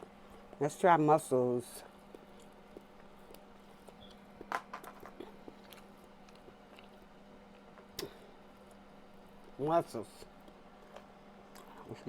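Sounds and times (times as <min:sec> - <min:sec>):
faint steady hum: 0:00.0 - 0:12.0
mouth clicks and smacks eating: 0:01.8 - 0:08.8, 0:10.4 - 0:12.0.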